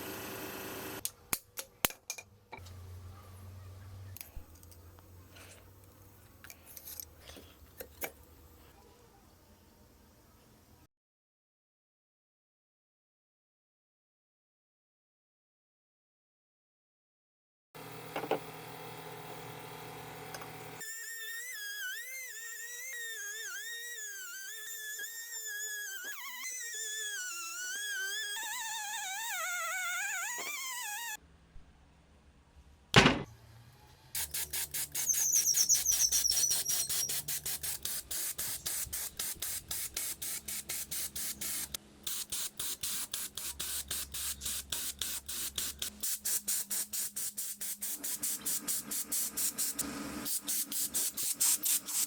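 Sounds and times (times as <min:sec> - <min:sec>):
short hissing strokes: 0:34.2 - 0:52.0
whistle-like music melody: 0:35.0 - 0:37.2.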